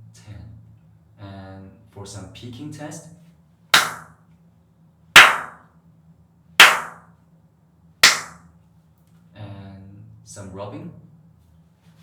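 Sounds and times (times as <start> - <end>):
loud hand claps: 3.8 - 4.1, 5.2 - 5.6, 6.6 - 7.0, 8.0 - 8.4.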